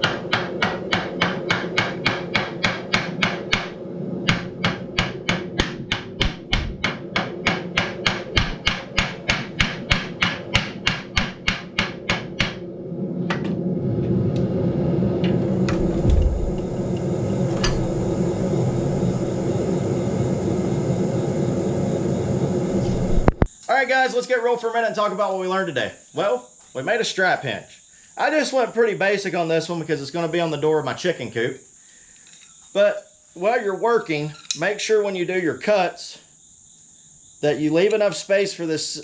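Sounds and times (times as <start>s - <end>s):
hammer striking steel on anvil: 0.0s - 12.6s
steady hum: 0.0s - 26.3s.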